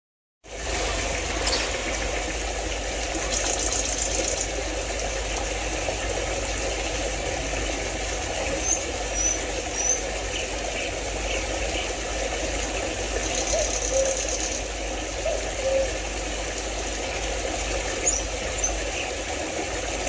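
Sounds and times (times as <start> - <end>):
stream rushing over rocks: 0.5 - 10.4.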